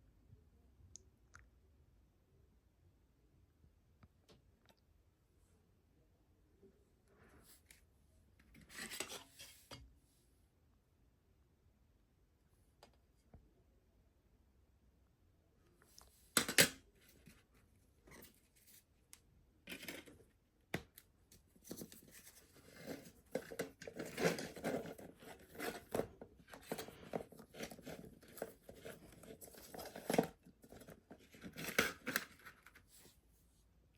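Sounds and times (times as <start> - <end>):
packaging scraping and rustling: 21.7 - 32.9.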